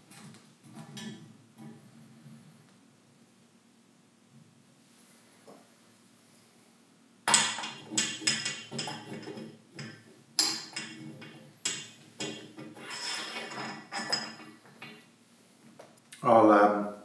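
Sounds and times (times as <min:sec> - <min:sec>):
metal parts knocking and clanking: 0:07.3 - 0:15.1.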